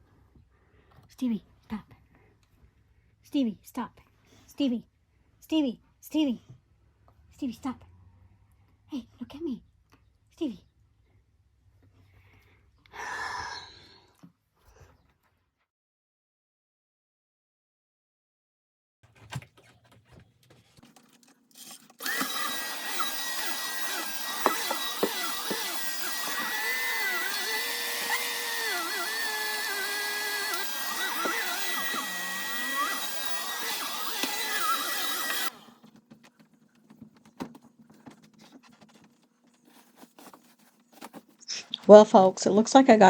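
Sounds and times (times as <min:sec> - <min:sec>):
cleaning machine motor whine: 0:22.0 - 0:35.6.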